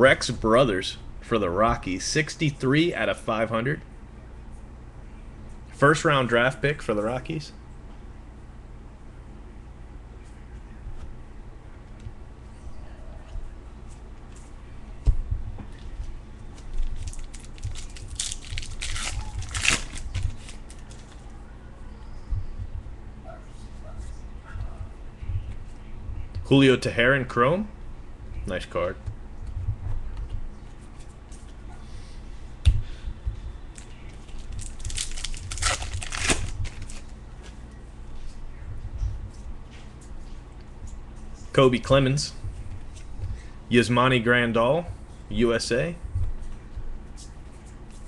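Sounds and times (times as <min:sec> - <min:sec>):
cards being handled: 0:15.7 - 0:21.3
wrapper crinkling and tearing: 0:16.7 - 0:21.3, 0:33.8 - 0:37.2.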